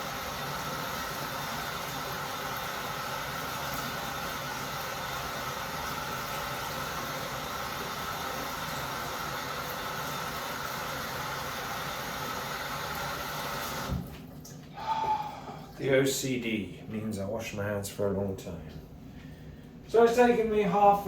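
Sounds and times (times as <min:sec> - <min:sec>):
tap water running into sink: 0:00.0 - 0:14.5.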